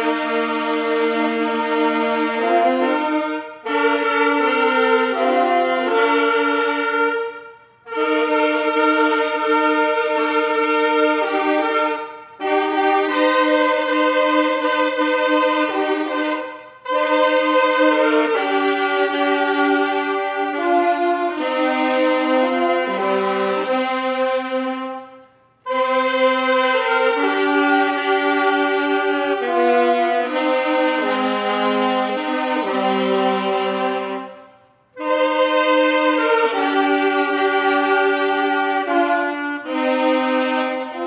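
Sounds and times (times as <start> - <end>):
brass-like church anthem chords: 0.0 - 41.0.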